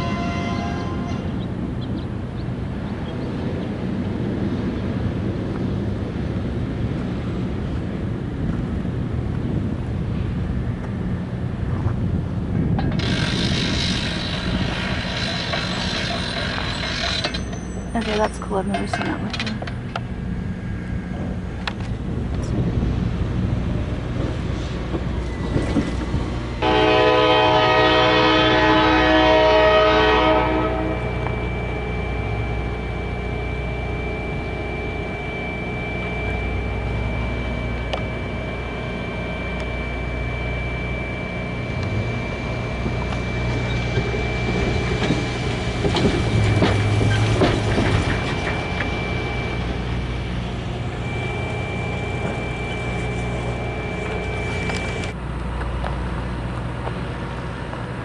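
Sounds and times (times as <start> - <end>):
locomotive air horn: 0.0 - 1.4, 26.6 - 36.8, 50.8 - 55.2
diesel engine rumble: 0.0 - 58.0
train cars rattling and clanking: 0.0 - 58.0.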